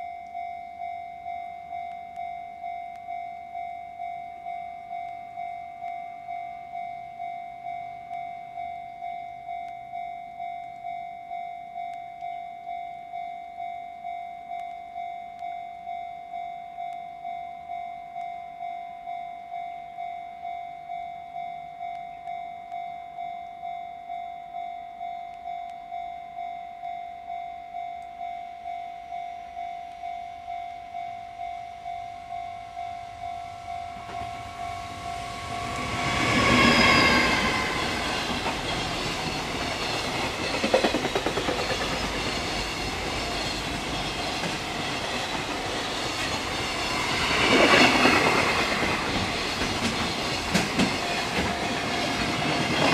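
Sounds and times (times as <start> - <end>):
level crossing bell ringing: 0.0 - 40.6
train rushing past: 32.1 - 52.9
train horn: 33.1 - 38.5
clatter over rail joints: 38.3 - 45.7.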